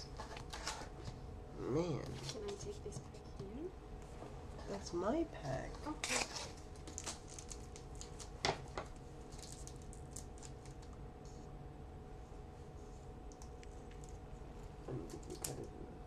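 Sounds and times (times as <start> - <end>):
faint steady hum: 0.0 - 16.0
card pack crinkling: 6.0 - 8.4, 9.3 - 11.0
cards and wrapper rustling: 6.0 - 8.4, 9.3 - 10.9.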